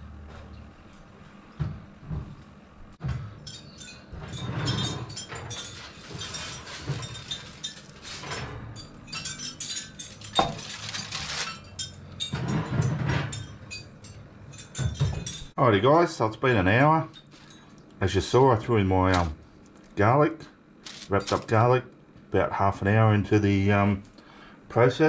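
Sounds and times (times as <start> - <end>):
light clinks: 3.3 - 10.9
rustling crinkles: 5.5 - 8.5, 10.2 - 11.8, 20.8 - 21.6.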